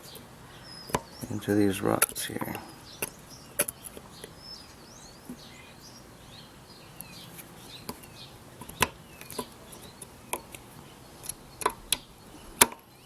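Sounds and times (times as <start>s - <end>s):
faint bird chirps: 0.0s - 13.0s.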